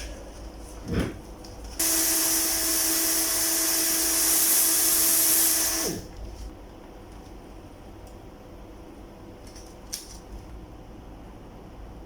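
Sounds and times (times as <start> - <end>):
heat gun blowing air: 1.8 - 6.1.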